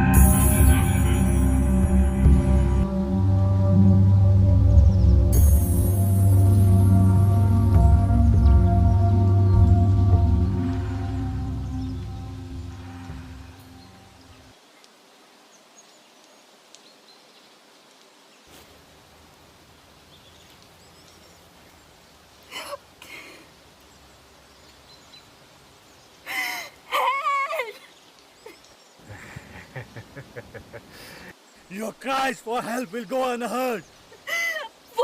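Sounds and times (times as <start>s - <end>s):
faint outdoor ambience: 0.0s - 35.0s
person crying out in distress: 34.3s - 34.8s.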